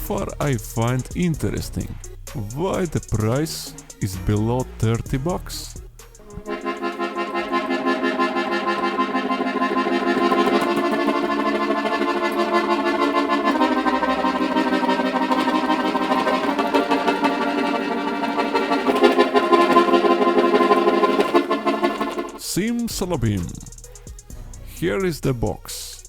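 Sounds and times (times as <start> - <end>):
accordion chords: 6.2 - 22.5.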